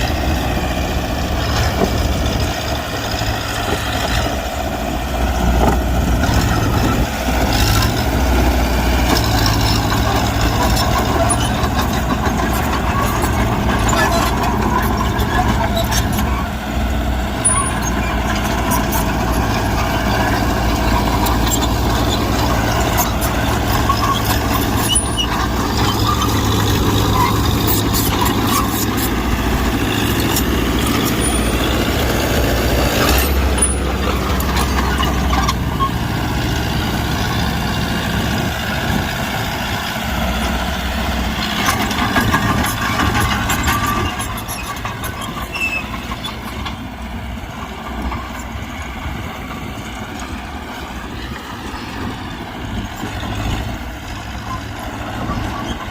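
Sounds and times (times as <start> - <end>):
bulldozer diesel engine running: 0.0 - 55.9.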